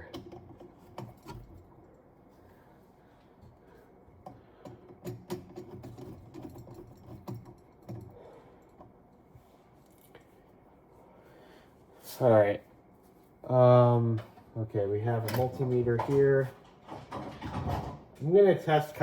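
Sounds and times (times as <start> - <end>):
hands handling parts and tools: 0.0 - 10.6.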